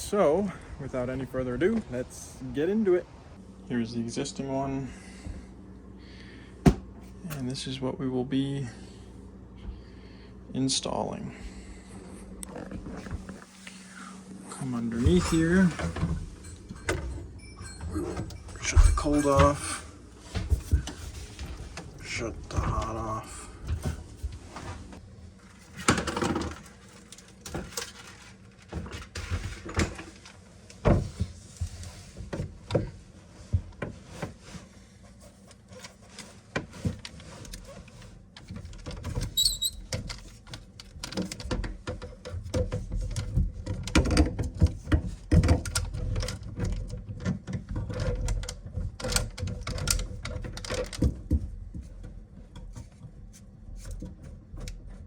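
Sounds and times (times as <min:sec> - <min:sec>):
tools and plumbing parts clattering: 0:14.6 - 0:33.0, 0:35.8 - 0:53.1.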